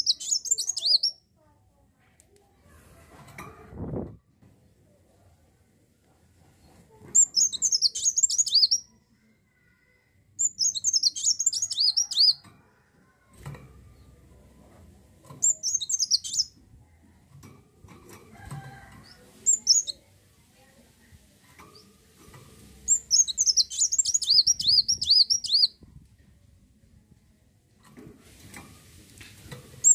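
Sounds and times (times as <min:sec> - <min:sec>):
sunbird twittering: 0:00.0 - 0:01.2, 0:15.4 - 0:16.5, 0:22.9 - 0:25.7.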